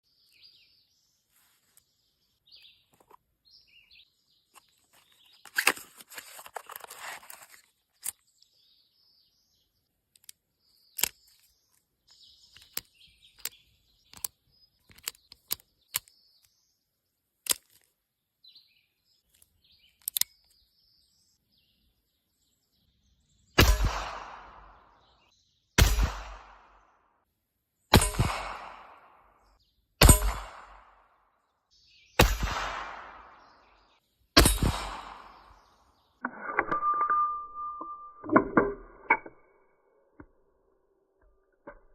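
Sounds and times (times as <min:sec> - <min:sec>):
birds chirping: 0:00.0 - 0:23.7, 0:31.6 - 0:36.3
sharp clicks: 0:11.0 - 0:11.4, 0:12.6 - 0:16.1, 0:20.0 - 0:20.5.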